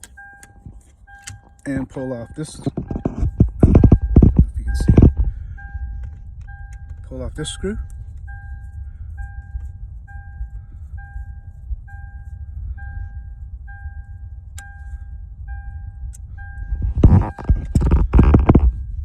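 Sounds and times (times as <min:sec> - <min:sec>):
dashboard warning chime beeping: 0:00.0 - 0:19.0
low rumble: 0:00.0 - 0:19.0.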